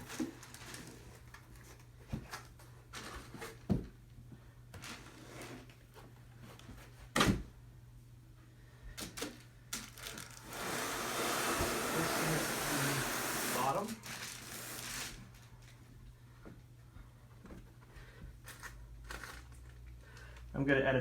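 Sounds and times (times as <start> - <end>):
speaker and packaging handled: 9.0 - 10.5.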